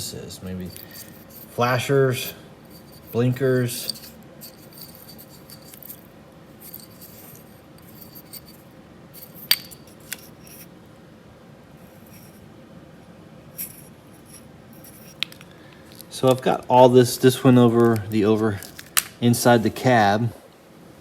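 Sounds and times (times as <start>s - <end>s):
wiring harness rustling and clicking: 2.7s - 8.6s, 13.6s - 16.7s, 17.7s - 19.2s.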